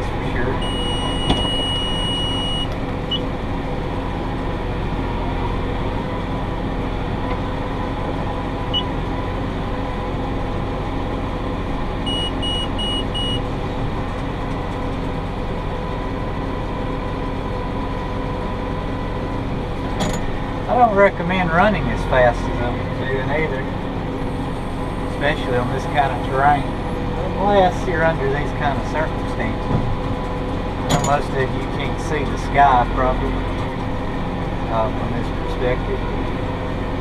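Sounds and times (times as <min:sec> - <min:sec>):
tractor and baler drone: 0:00.0 - 0:37.0
held electronic beep: 0:00.6 - 0:03.2, 0:12.1 - 0:13.4
short electronic beeps: 0:00.6 - 0:03.2, 0:12.1 - 0:13.4.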